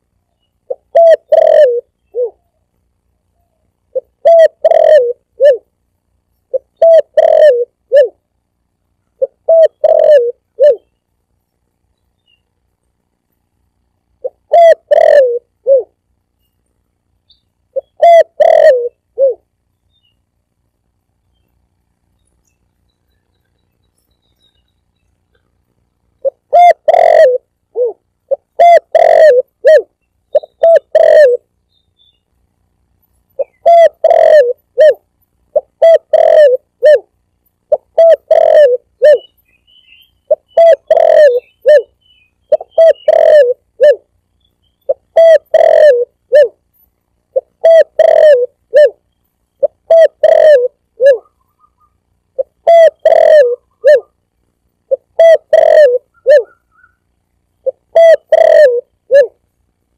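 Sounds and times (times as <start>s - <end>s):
dove cooing: 0.7s - 2.6s, 3.9s - 5.8s, 6.5s - 8.2s, 9.2s - 10.9s, 14.2s - 16.0s, 17.7s - 19.5s, 26.2s - 31.5s, 33.4s - 37.1s, 37.7s - 39.4s, 40.0s - 44.1s, 44.8s - 49.0s, 49.6s - 54.2s, 54.9s - 57.0s, 57.6s - 59.4s.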